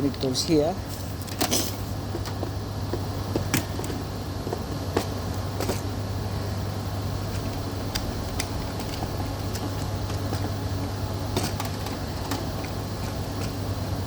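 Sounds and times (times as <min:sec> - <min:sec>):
low mechanical hum: 0:00.0 - 0:14.0
crimp connectors clicking and rattling: 0:07.3 - 0:13.6.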